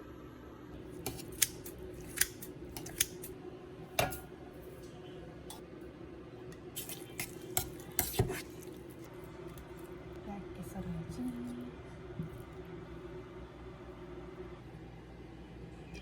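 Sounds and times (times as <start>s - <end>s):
low steady hum: 0.0s - 16.0s
sharp snipping clicks: 1.1s - 3.2s.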